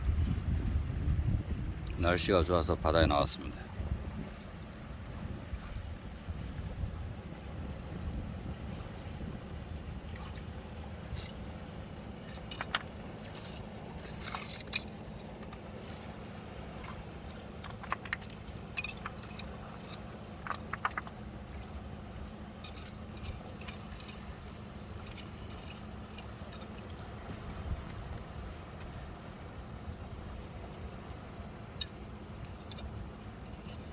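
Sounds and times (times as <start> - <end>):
low rumble of sea: 0.0 - 33.9
clicks and rattles: 12.2 - 16.0, 16.8 - 21.8, 22.6 - 26.8, 31.7 - 33.9.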